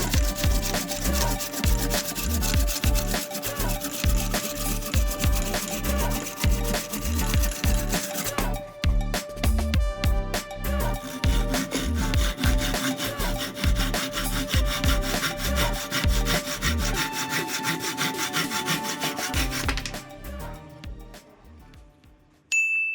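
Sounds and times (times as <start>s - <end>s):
hand saw cutting wood: 0.0s - 8.6s, 11.0s - 19.9s.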